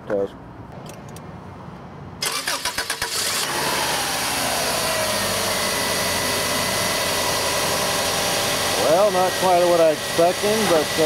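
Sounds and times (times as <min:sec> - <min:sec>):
starter cranking engine: 0:02.2 - 0:04.5
car engine idling: 0:03.3 - 0:11.0.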